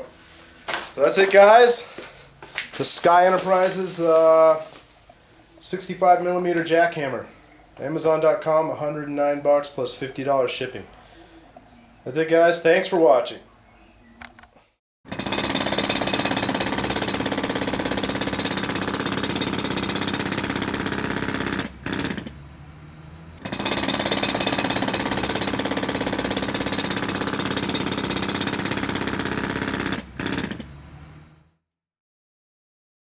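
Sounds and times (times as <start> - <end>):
jackhammer on concrete: 15.1 - 22.4, 23.4 - 30.8.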